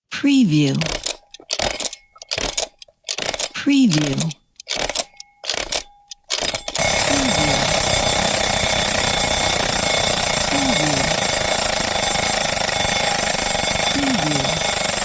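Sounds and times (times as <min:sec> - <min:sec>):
clock ticking: 0:00.4 - 0:15.0
alarm clock ringing: 0:05.0 - 0:15.0.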